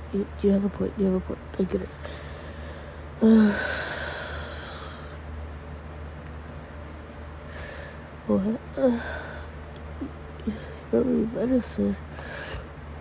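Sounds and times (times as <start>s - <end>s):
woman sighing: 2.0s - 5.0s.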